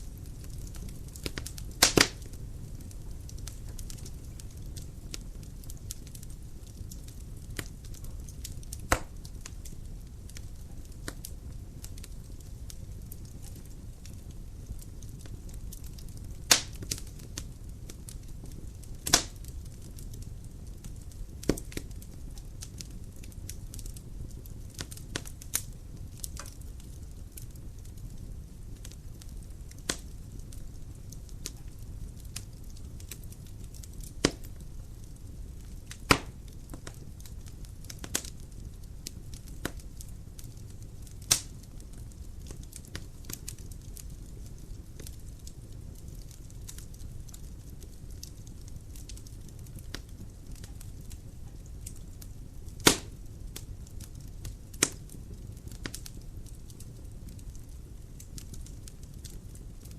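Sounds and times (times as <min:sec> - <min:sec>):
fire crackling and popping: 0:00.0 - 0:59.9
fire rumbling: 0:00.0 - 0:59.9.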